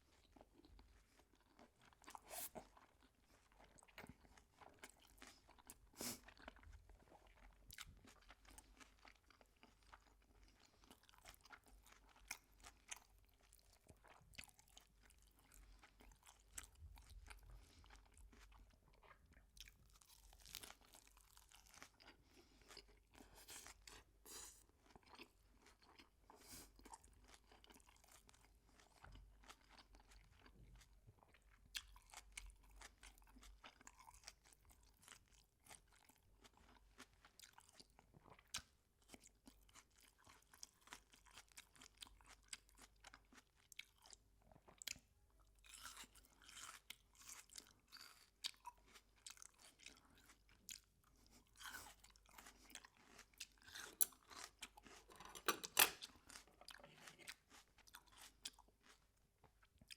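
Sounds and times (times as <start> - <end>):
chewing crispy food: 0.0 - 59.9.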